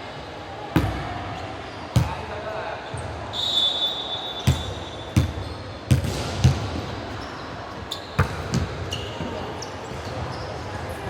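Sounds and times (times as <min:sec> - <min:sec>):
basketball bouncing on gym floor: 0:04.5 - 0:06.8, 0:08.2 - 0:10.3.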